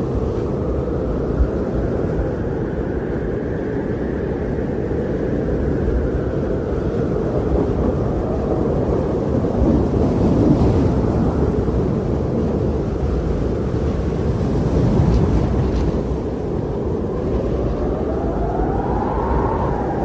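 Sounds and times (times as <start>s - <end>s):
wind blowing: 0.0s - 20.0s.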